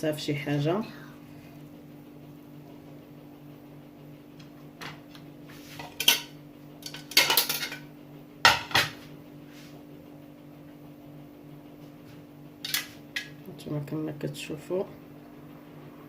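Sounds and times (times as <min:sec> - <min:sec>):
utensils clattering: 0:05.8 - 0:07.8.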